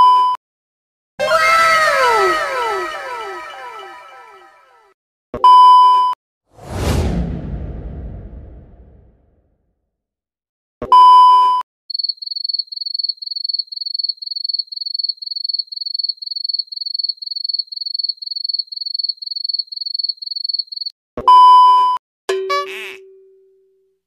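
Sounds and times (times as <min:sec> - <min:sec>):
cricket chirping sound effect: 0:11.9 - 0:20.9.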